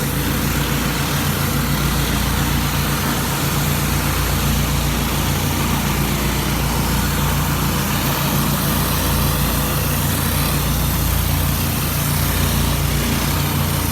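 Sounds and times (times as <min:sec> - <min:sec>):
pressure washer engine running: 0:00.0 - 0:13.9.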